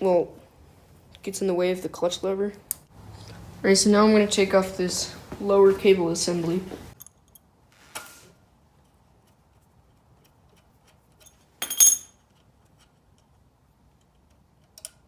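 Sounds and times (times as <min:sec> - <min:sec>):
metal bicycle parts clinking: 0:11.1 - 0:12.4.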